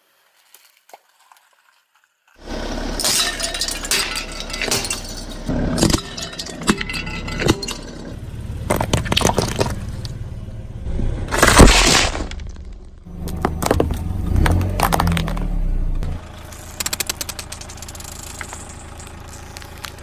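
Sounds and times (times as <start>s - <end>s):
tyre crushing brittle objects: 0.1s - 10.1s, 11.3s - 15.5s, 16.2s - 20.0s
low car rumble: 2.4s - 20.0s.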